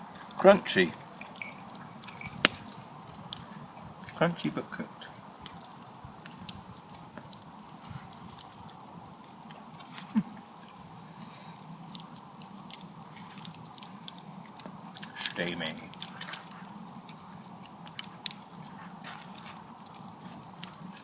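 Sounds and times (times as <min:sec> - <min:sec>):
person chewing crunchy food: 0:05.4 - 0:21.0.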